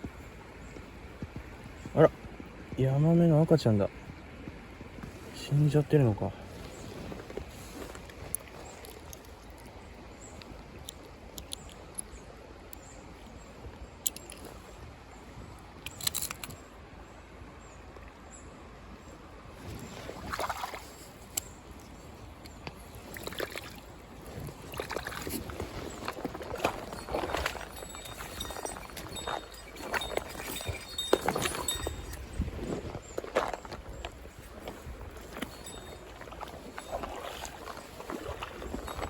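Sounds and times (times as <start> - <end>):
mountain stream flowing: 0.0 - 39.0
sharp clicks: 10.8 - 12.1
water sloshing: 19.5 - 39.0.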